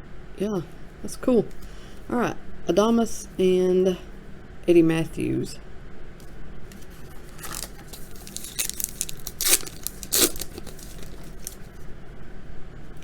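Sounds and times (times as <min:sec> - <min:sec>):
papery swishes of cards handled: 0:06.2 - 0:11.9.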